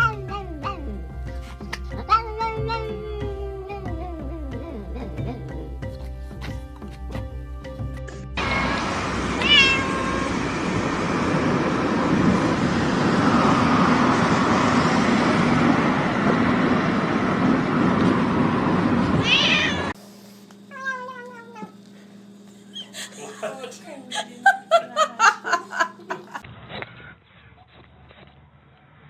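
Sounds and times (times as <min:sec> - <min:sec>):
cat meowing: 0:08.4 - 0:08.8, 0:09.4 - 0:10.2, 0:19.2 - 0:20.0, 0:20.7 - 0:21.8
loud steady rumbling: 0:08.4 - 0:20.0.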